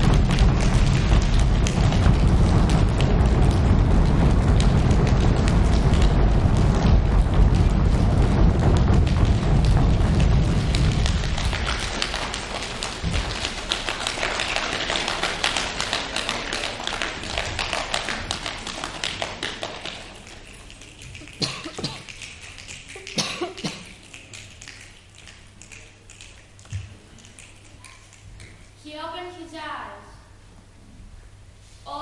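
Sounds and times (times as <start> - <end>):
rain pattering: 0.0 - 29.4.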